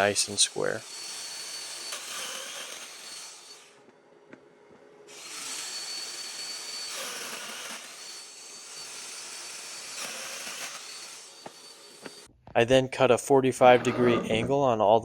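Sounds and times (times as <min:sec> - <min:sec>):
power tool motor whining: 0:00.0 - 0:03.7, 0:05.1 - 0:12.3.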